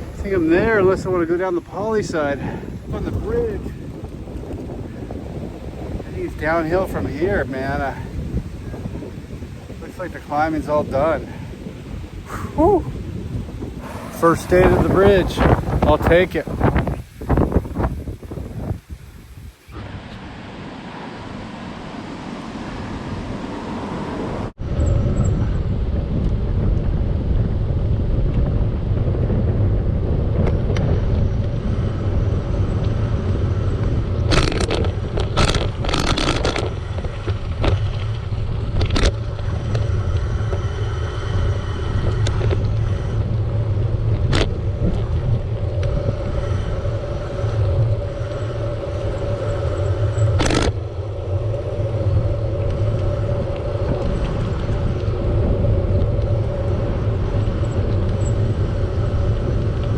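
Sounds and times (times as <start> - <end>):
bicycle road rumble: 0.0 - 59.9
wind rushing over microphone: 0.0 - 59.9
bicycle clattering over bumps: 33.2 - 59.9.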